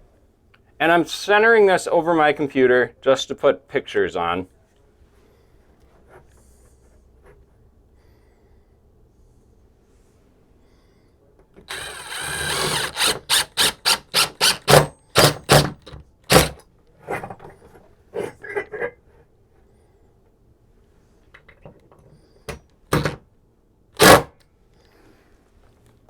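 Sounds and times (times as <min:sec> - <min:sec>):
cordless drill driving screw: 0:11.7 - 0:16.6.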